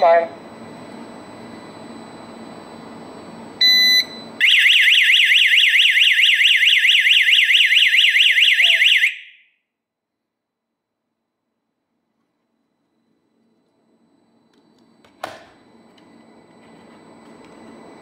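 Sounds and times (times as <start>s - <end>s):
short alarm beep: 3.6s - 9.5s
warbling alarm siren: 4.4s - 9.6s.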